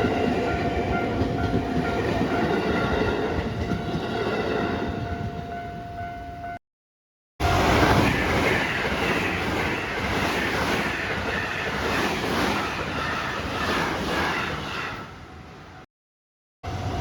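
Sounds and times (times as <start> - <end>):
train roaring past on rails: 0.0 - 6.6, 7.4 - 15.9, 16.6 - 17.0.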